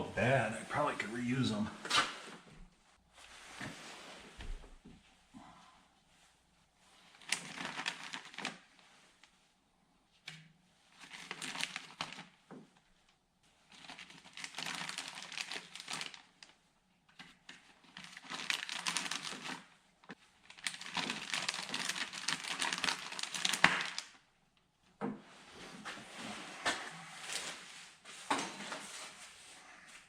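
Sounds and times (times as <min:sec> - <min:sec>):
packaging crinkling and rustling: 0:07.0 - 0:09.3, 0:10.9 - 0:12.4, 0:13.6 - 0:16.6, 0:17.2 - 0:24.2.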